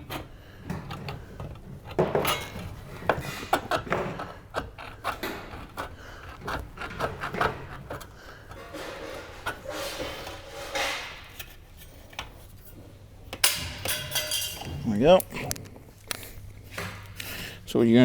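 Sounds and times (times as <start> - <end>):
metal rattling: 13.4 - 15.6.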